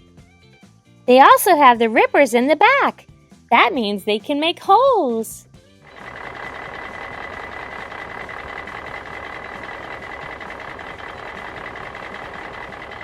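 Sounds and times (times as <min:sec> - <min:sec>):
toy bulldozer engine whining: 0:05.9 - 0:13.0.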